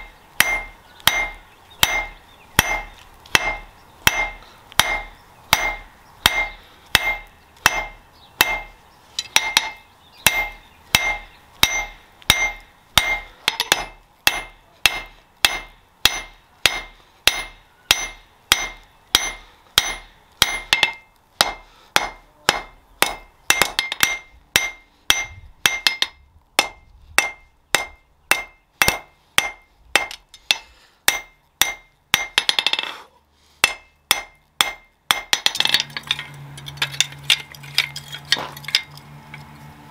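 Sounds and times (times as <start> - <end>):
hammer ringing on anvil: 0.4 - 8.7, 9.4 - 30.2.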